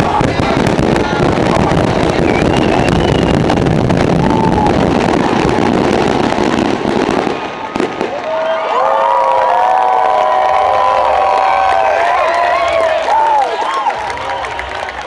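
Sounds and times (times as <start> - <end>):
crowd cheering and whistling: 0.0 - 5.5, 7.1 - 15.0
fireworks bangs and crackling: 0.0 - 8.7.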